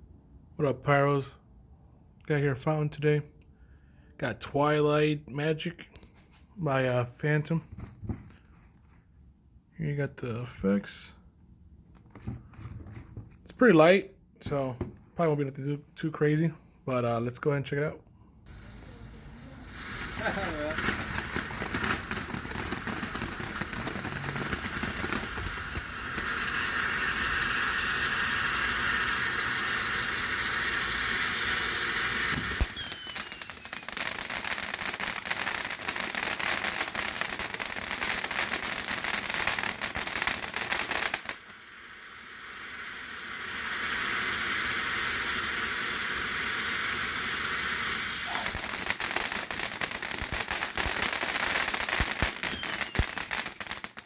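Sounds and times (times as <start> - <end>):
firework fountain hissing crackle: 18.4 - 54.0
falling whistles: 32.4 - 34.2, 52.3 - 53.8.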